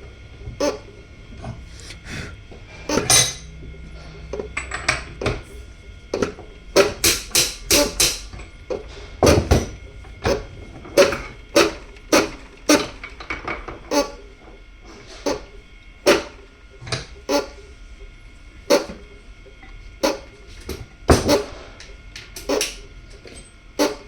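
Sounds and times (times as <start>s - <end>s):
metal tools clinking: 3.1s - 3.5s.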